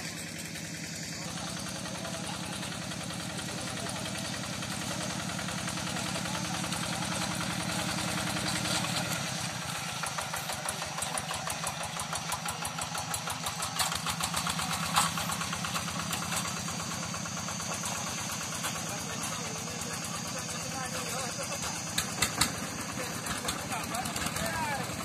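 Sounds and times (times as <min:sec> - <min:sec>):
diesel engine knocking: 0:00.0 - 0:25.0.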